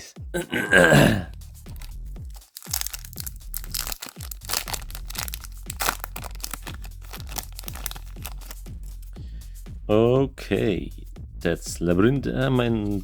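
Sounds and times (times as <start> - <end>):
background music with steady beat: 0.0 - 13.0
foil wrapper crinkling: 1.7 - 9.0.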